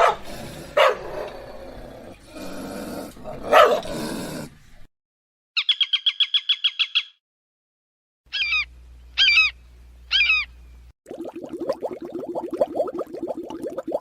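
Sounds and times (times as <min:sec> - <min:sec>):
bird calls with bending pitch: 0:05.6 - 0:07.2, 0:08.3 - 0:10.8
bird chirping trill: 0:05.6 - 0:07.2, 0:08.3 - 0:10.9.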